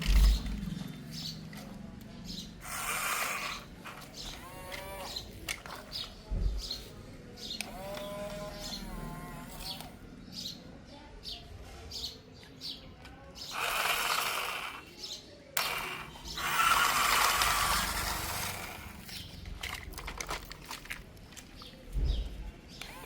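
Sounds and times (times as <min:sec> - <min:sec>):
mechanism grinding and ratcheting: 0:00.0 - 0:01.7, 0:02.6 - 0:06.8, 0:07.4 - 0:10.0, 0:13.4 - 0:14.9, 0:15.6 - 0:21.7
birds chirping: 0:00.0 - 0:23.0.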